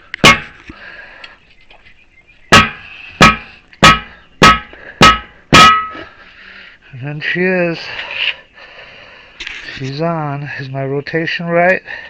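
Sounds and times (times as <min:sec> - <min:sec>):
hammer blows ringing on rim: 0:00.2 - 0:00.6, 0:02.5 - 0:06.0.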